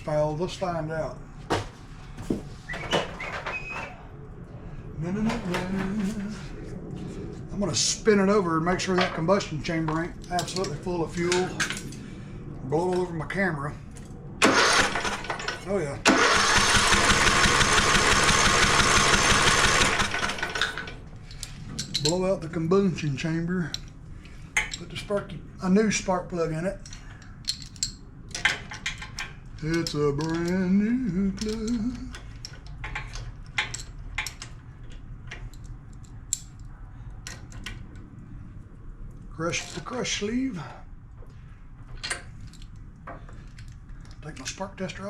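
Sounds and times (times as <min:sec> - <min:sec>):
low steady hum: 0:00.0 - 0:14.4, 0:20.6 - 0:45.0
electric starter cranking engine: 0:14.4 - 0:15.4, 0:16.0 - 0:21.0.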